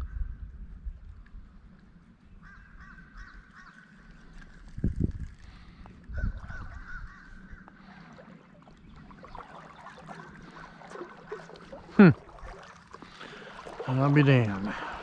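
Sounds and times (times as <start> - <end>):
birds calling: 2.2 - 4.7, 5.5 - 15.0.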